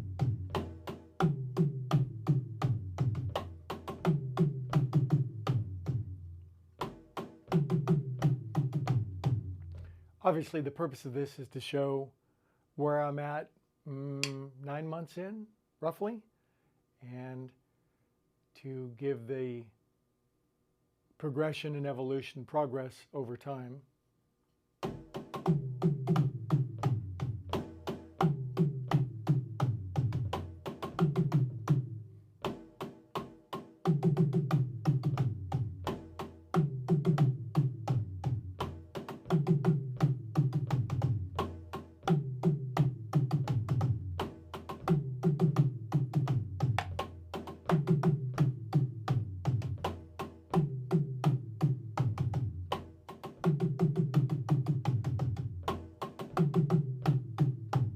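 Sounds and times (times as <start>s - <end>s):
drum kit groove: 0.0s - 10.6s, 24.8s - 57.9s.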